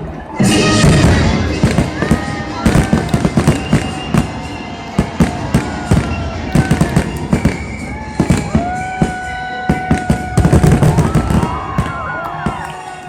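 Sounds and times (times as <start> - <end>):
gliding whistling tones: 0.3 - 10.5
fireworks booming and cracking: 0.3 - 13.0.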